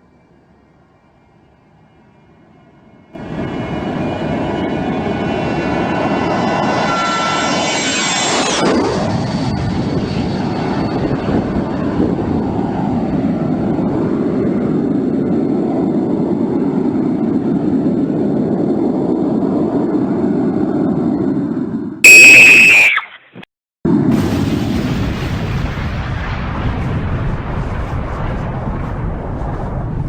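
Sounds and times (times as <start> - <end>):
airplane engines droning: 0.0 - 23.1, 26.4 - 30.0
loud high-pitched blare: 22.0 - 23.4.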